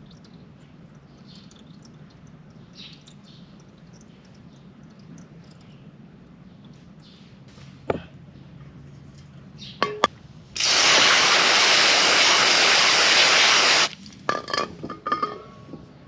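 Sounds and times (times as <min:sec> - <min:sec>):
aerosol spray can spraying: 0:10.6 - 0:14.0.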